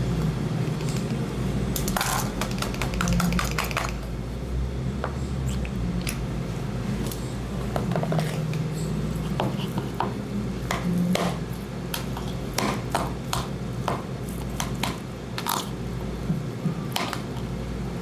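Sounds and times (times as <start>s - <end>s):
steady low hum: 0.0s - 14.3s.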